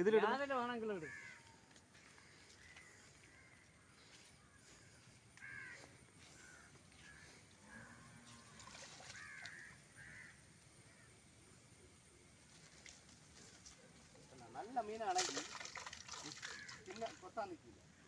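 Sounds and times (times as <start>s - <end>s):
faint short bird calls: 1.0s - 11.1s.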